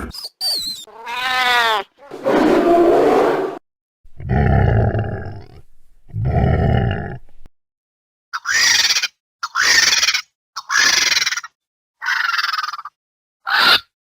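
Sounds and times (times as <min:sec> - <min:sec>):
loud roar-like animal calls: 0:02.1 - 0:03.6
animal growling: 0:02.1 - 0:07.5.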